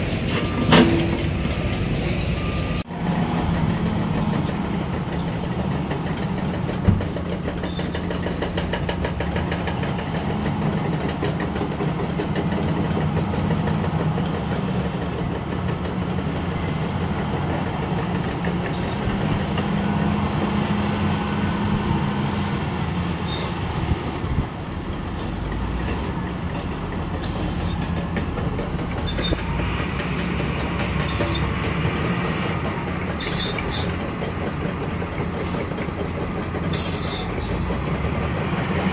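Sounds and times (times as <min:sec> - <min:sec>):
diesel machinery engine drone: 0:00.0 - 0:38.9.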